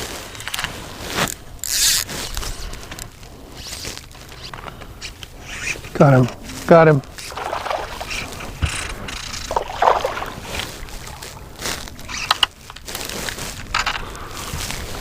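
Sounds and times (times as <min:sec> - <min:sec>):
water splashing: 0:07.1 - 0:12.3.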